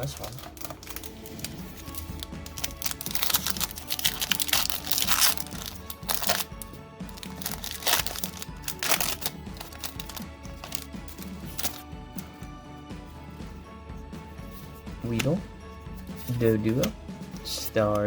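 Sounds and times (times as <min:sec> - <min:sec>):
foil wrapper crinkling: 0:00.0 - 0:11.8
background music: 0:00.0 - 0:18.0.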